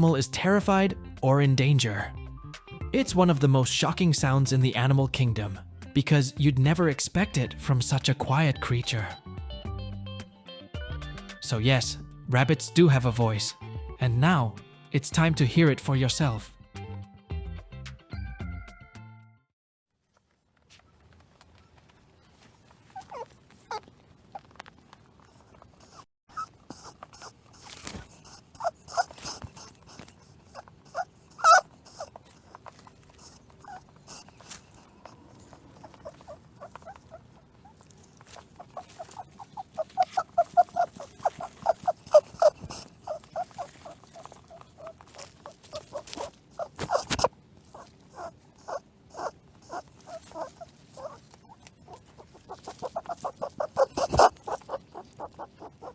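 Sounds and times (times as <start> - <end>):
rabbit vocalizing: 21.8 - 55.9.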